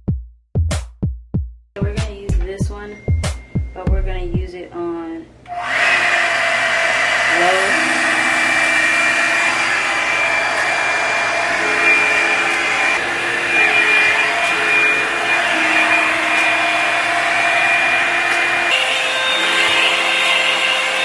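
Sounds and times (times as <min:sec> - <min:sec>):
hair dryer running: 0:05.5 - 0:21.0.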